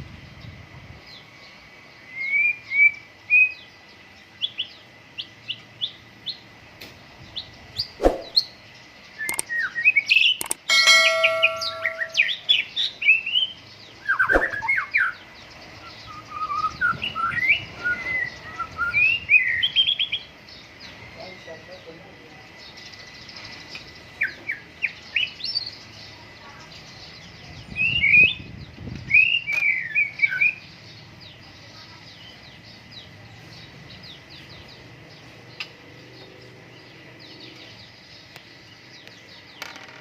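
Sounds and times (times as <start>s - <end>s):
bird singing chirps and whistles: 2.1s - 3.7s, 9.2s - 15.2s, 15.8s - 20.3s, 27.6s - 30.7s
bird harsh buzzing note: 10.6s - 12.8s.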